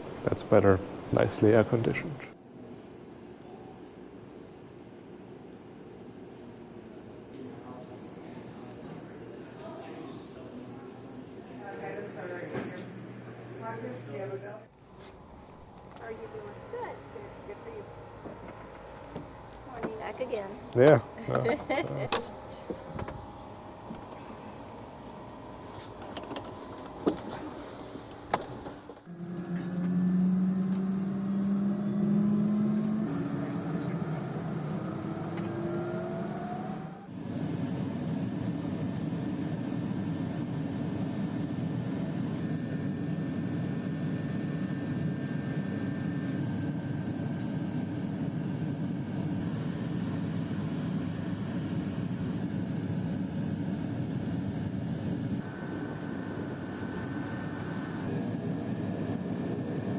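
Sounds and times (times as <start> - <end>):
turboprop engine running: 0.0 - 2.4, 14.7 - 59.9.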